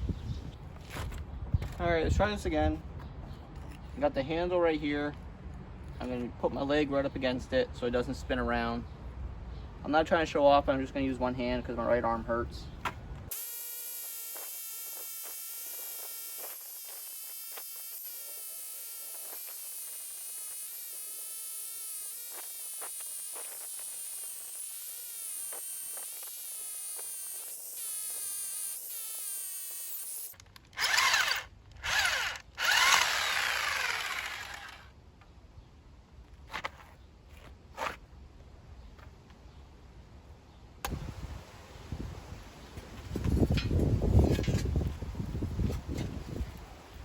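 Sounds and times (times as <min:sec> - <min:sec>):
jackhammer motor whine: 0:30.0 - 0:34.8.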